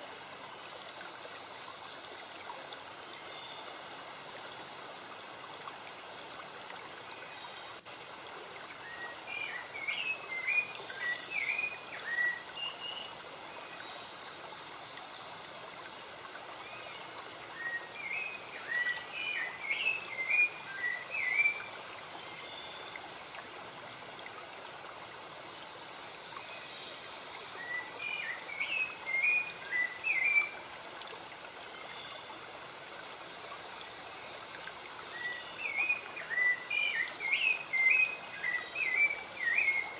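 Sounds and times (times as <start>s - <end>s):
running water: 0.0s - 39.9s
songbird chirping: 8.8s - 15.6s, 16.7s - 24.0s, 25.8s - 30.7s, 35.0s - 39.9s.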